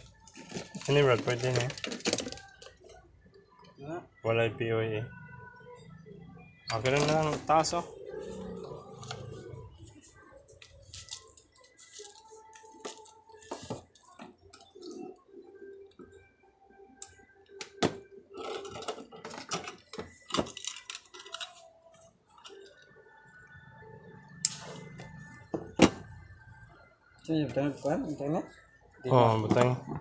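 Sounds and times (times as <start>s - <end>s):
hard objects clicking and clinking: 0.0s - 3.0s, 6.7s - 7.8s, 17.0s - 21.7s.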